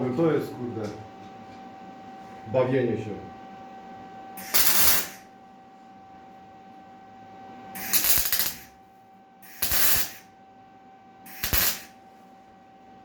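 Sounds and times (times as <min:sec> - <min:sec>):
welding crackling hiss: 0:04.4 - 0:05.2, 0:07.8 - 0:08.7, 0:09.4 - 0:10.2, 0:11.3 - 0:11.9.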